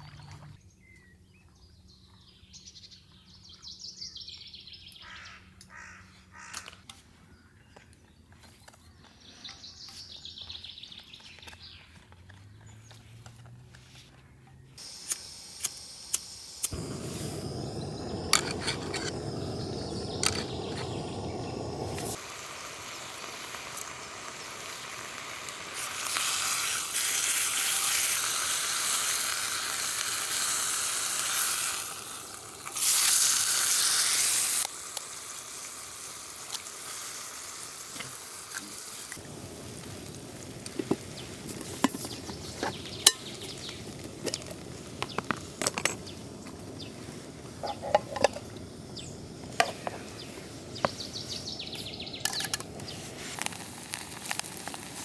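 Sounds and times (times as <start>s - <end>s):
food sizzling in a frying pan: 14.8s - 55.0s.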